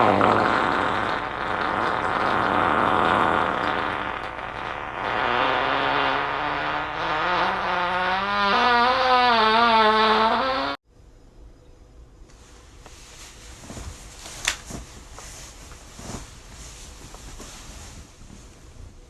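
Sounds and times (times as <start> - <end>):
long fart: 0.0 - 10.8.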